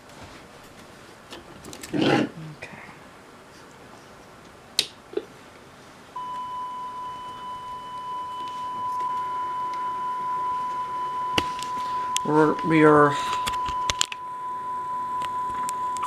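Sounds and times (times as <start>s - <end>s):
steady test tone: 6.2s - 16.0s.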